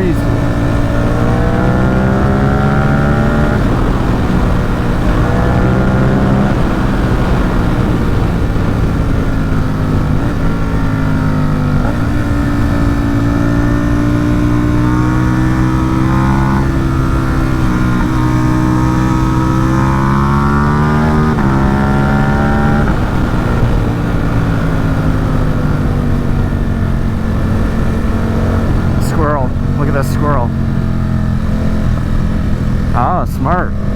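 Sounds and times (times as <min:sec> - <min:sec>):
motorcycle engine accelerating: 0:00.0 - 0:33.9.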